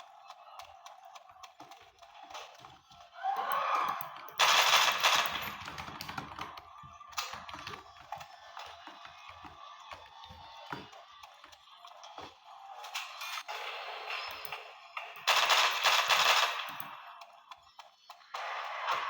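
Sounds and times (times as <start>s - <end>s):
keyboard keys clicking: 0.0s - 12.4s.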